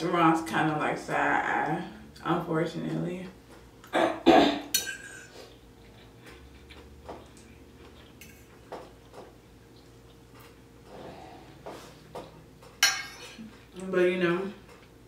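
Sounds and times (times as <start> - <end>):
faint eating clicks and taps: 3.2 - 3.9, 5.5 - 10.7, 12.0 - 15.0.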